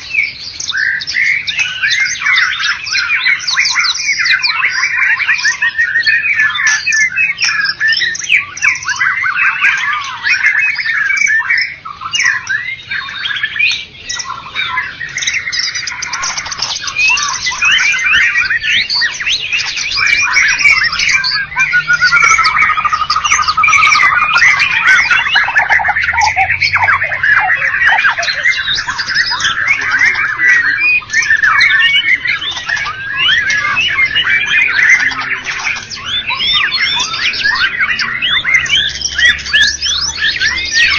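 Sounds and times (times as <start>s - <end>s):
songbird singing: 0.0s - 40.9s.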